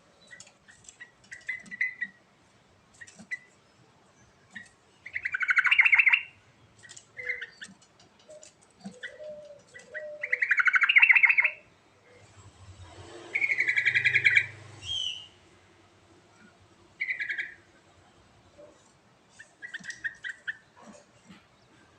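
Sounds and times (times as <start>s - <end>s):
bird singing bubbling phrases: 5.0s - 6.4s, 17.0s - 17.6s.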